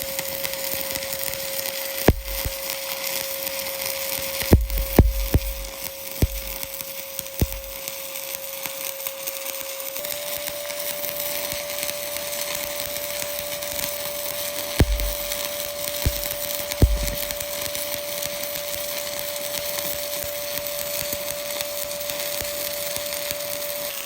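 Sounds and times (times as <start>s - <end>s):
welding arc crackling: 0.0s - 24.0s
sharp pops: 2.1s - 2.6s, 4.5s - 6.8s, 7.4s - 7.8s, 14.8s - 17.6s.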